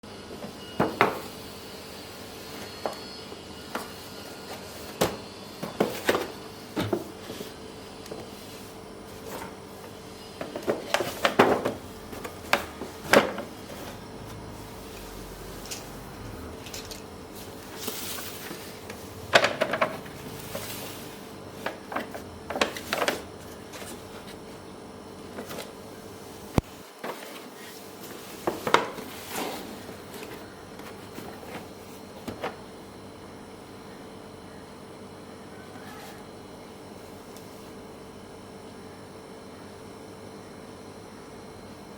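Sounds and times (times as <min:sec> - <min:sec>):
packaging knocks clicks and rustles: 0:21.6 - 0:24.4.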